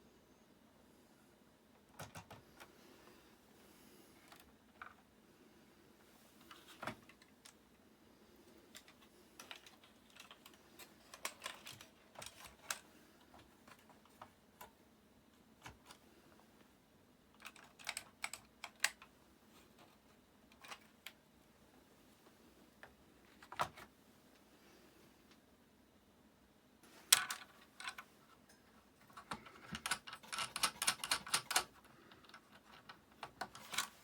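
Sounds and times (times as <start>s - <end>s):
hands clicking small hardware: 29.1s - 34.0s.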